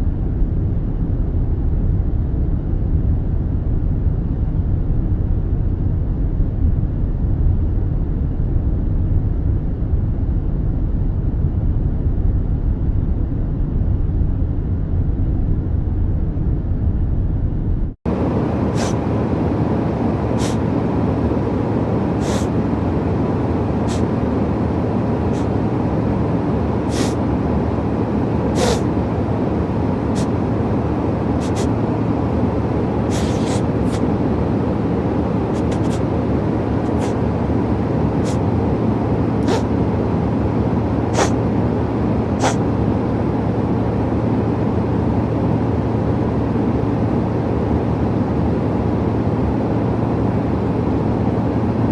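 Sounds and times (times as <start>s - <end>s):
airliner cabin drone: 0.0s - 51.9s
person sniffling: 18.8s - 19.0s, 20.4s - 20.6s, 22.2s - 22.5s, 23.9s - 24.1s, 26.9s - 27.2s, 28.6s - 28.9s, 31.4s - 31.7s, 33.1s - 34.0s, 35.6s - 36.0s, 36.9s - 37.2s, 39.4s - 39.7s, 41.1s - 41.4s, 42.4s - 42.6s.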